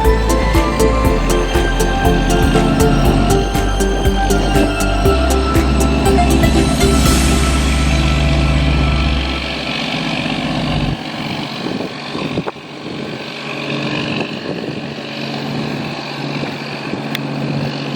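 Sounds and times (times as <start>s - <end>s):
engine humming: 0.0s - 11.7s
outdoor noise: 0.0s - 17.9s.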